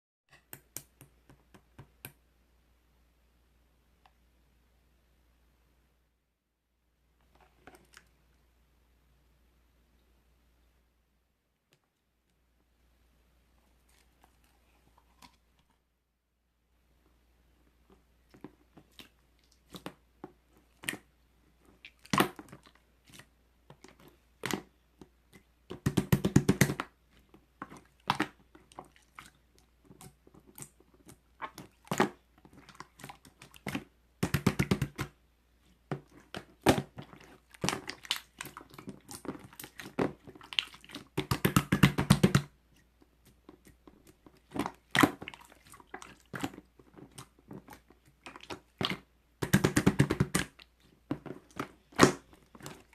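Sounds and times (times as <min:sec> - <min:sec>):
rustling and crinkling: 0:42.8 - 0:49.1.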